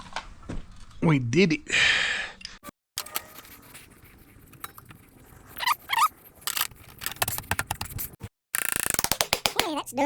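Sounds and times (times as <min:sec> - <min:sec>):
short squeaks: 0:05.5 - 0:06.7.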